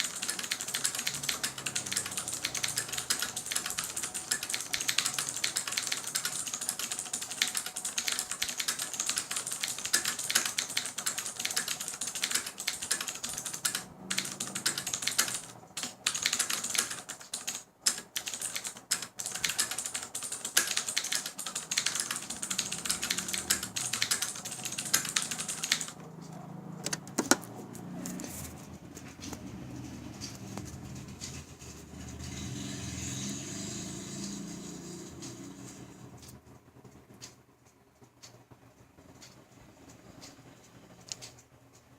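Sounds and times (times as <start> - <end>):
typing on mechanical keyboard: 0.0 - 27.5.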